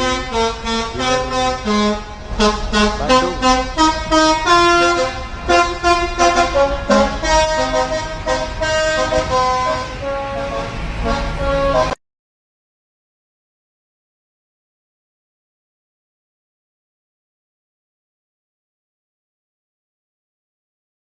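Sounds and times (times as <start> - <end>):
multi-tone bus horn melody: 0.0 - 12.0
low rumble: 0.5 - 11.1.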